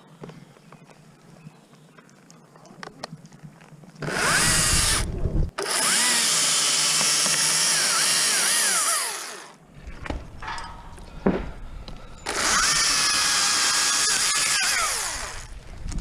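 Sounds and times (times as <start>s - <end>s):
chainsaw cutting wood: 4.0s - 9.6s, 12.2s - 15.6s.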